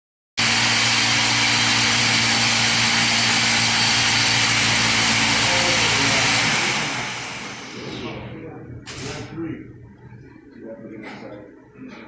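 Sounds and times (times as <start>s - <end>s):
machine hissing and humming: 0.4s - 8.0s.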